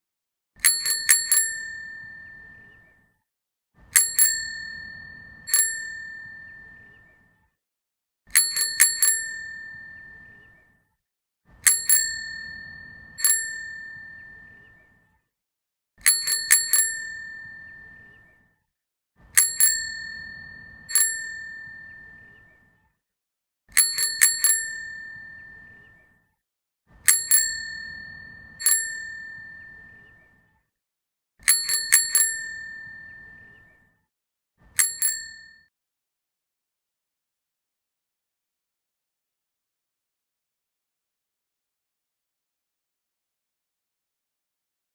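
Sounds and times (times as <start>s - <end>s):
bicycle bell ringing: 0.6s - 2.7s, 4.0s - 6.8s, 8.3s - 10.3s, 11.6s - 14.6s, 16.0s - 18.1s, 19.3s - 22.3s, 23.7s - 25.8s, 27.0s - 30.0s, 31.4s - 33.5s, 34.8s - 35.7s.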